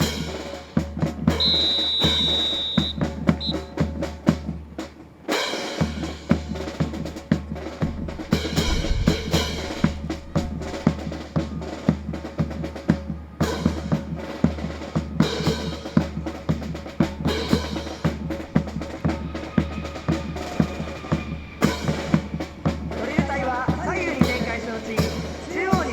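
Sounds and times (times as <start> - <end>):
drum-driven music with pulsing bass: 5.8 - 24.3.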